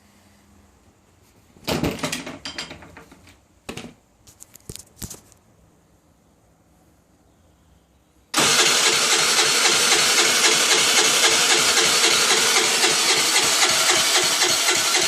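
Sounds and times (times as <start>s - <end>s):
scooter engine pulsing: 8.4s - 15.0s.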